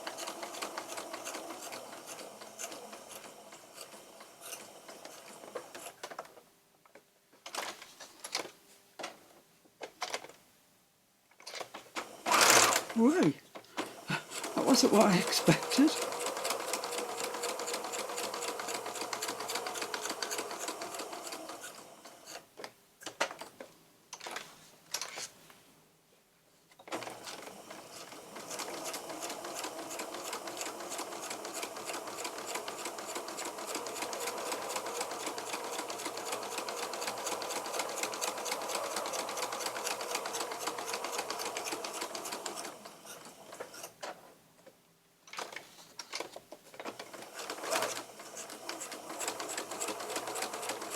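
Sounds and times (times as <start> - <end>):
sewing machine stitching paper: 0.0 - 6.3, 11.4 - 22.5, 26.8 - 44.2, 45.3 - 50.9.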